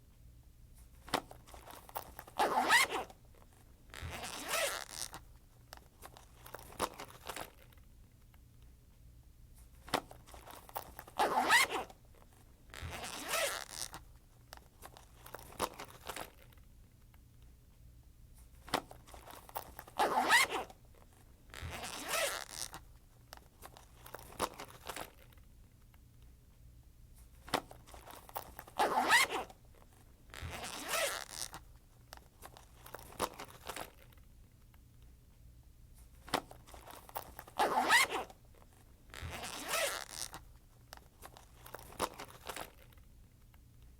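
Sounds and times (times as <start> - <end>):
zipper being pulled: 1.0 - 5.3, 6.0 - 7.7, 9.9 - 14.1, 14.8 - 16.5, 18.7 - 25.3, 27.4 - 34.2, 36.2 - 43.0
zipper pull clicks: 1.0 - 7.8, 9.8 - 16.6, 18.5 - 25.4, 27.3 - 34.2, 36.1 - 43.9.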